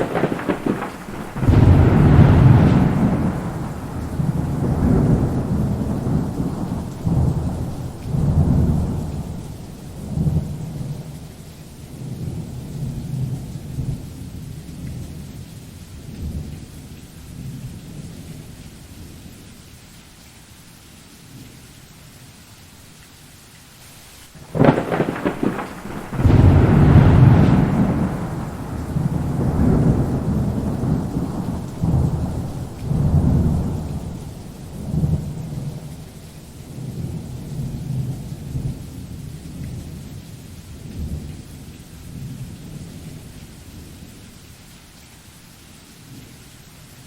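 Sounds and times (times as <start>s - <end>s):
sharp crack of thunder: 0.0s - 11.3s, 24.4s - 39.0s
rolling thunder rumble: 0.0s - 11.4s, 24.4s - 40.1s
steady rain: 0.0s - 47.0s.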